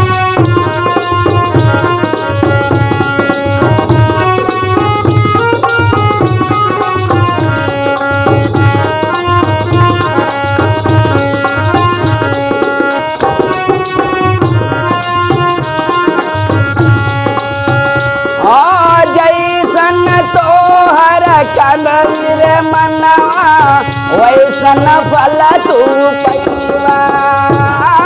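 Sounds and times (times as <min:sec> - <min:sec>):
held-note melody: 0:00.0 - 0:20.7
steady drum beat: 0:00.0 - 0:28.0
person singing: 0:18.4 - 0:28.0.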